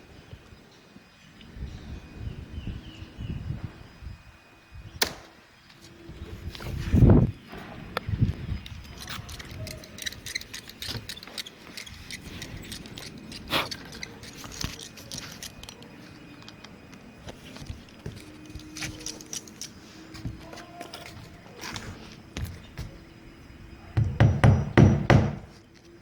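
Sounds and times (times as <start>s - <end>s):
nails and tools clicking and jingling: 8.6s - 23.0s
sharp knock on roof: 24.0s - 25.5s.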